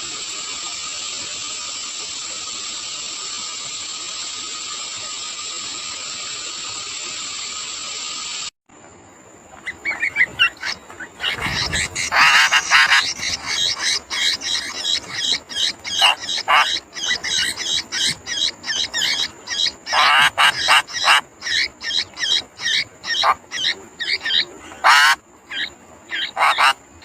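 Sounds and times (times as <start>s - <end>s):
steady hiss: 0.0s - 27.0s
bird chicks chirping and begging: 9.6s - 26.8s.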